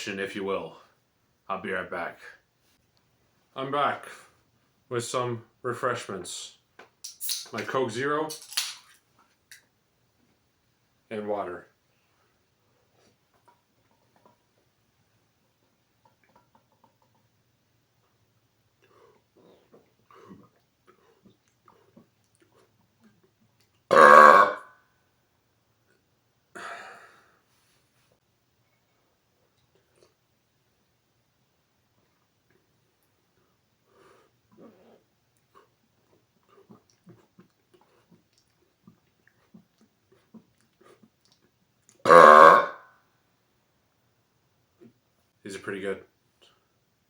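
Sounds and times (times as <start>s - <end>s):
man burping loudly: 23.9s - 24.6s, 42.0s - 42.8s.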